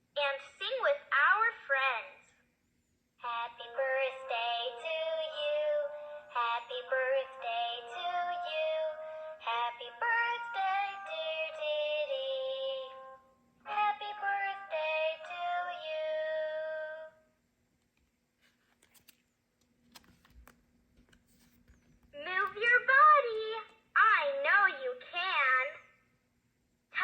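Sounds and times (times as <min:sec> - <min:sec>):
woman singing children's song: 0:00.2 - 0:02.3, 0:03.2 - 0:13.0, 0:13.7 - 0:16.9, 0:22.2 - 0:25.8.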